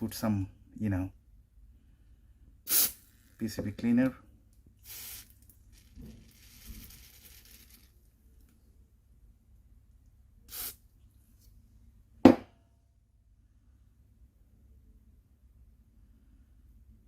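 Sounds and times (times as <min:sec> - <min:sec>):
aerosol spray hissing: 0:02.7 - 0:03.0, 0:04.8 - 0:05.3, 0:10.5 - 0:10.8
sharp knock: 0:12.2 - 0:12.6.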